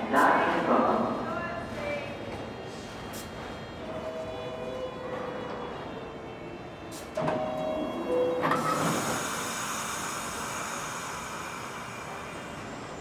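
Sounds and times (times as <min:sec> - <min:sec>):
train motor whine: 0:02.6 - 0:13.0.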